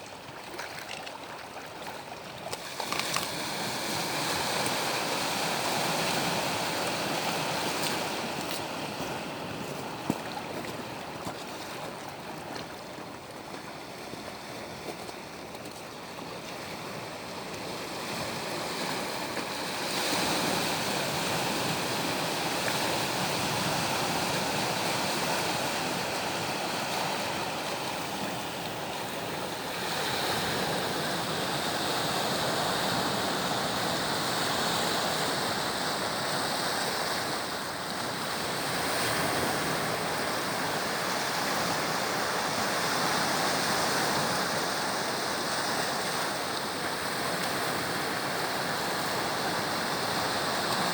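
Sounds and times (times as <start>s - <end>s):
sea waves breaking on shore: 0.0s - 50.9s.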